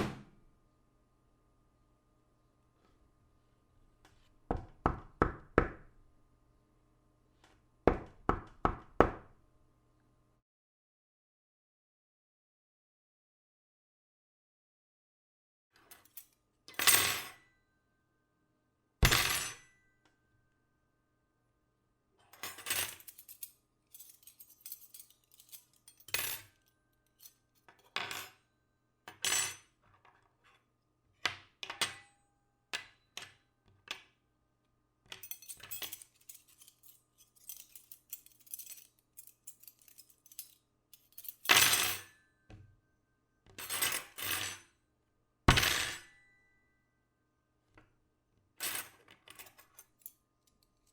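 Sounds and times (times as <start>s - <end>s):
metal objects clattering on table: 35.1s - 42.6s, 45.5s - 46.2s, 48.7s - 50.9s.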